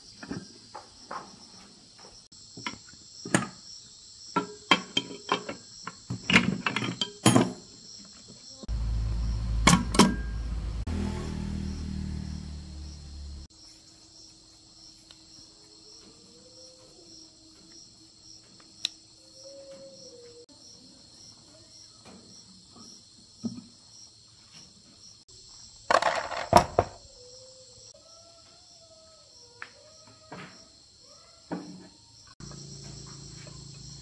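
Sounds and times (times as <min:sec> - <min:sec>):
insects chirring: 0:00.0 - 0:34.0
engine running: 0:08.7 - 0:13.5, 0:32.4 - 0:34.0.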